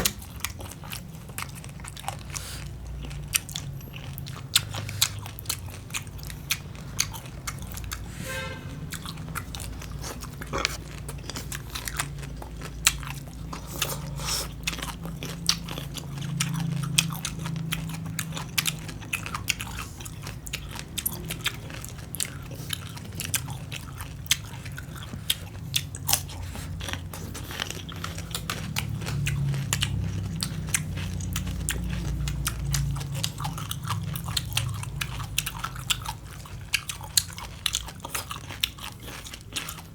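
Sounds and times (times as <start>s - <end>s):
crunchy chewing: 0.0s - 8.1s, 8.9s - 39.9s
steady low hum: 0.0s - 37.1s.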